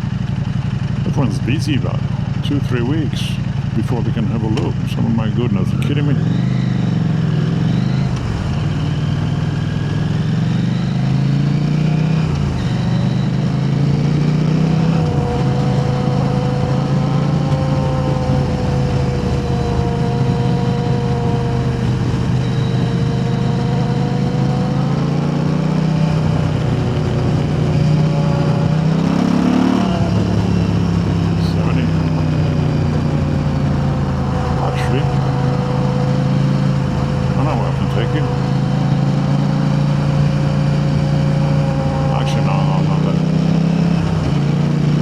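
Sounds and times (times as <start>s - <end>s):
motorcycle engine running: 0.0s - 45.0s
road and wind noise: 0.0s - 45.0s.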